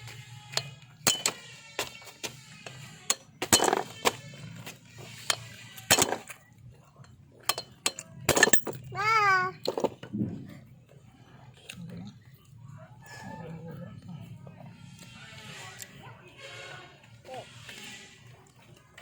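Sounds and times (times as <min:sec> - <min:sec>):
metal tools clinking: 0:00.5 - 0:01.9, 0:02.6 - 0:06.4, 0:07.0 - 0:10.0.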